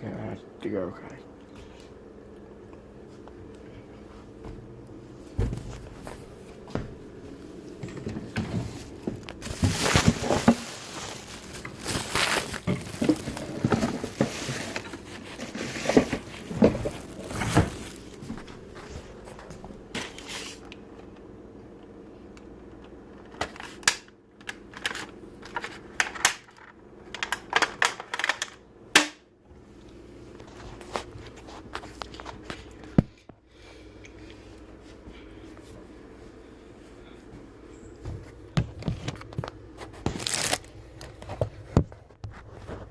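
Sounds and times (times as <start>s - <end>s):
rustling and crumpling: 8.0s - 20.7s, 30.2s - 32.9s, 38.1s - 42.9s.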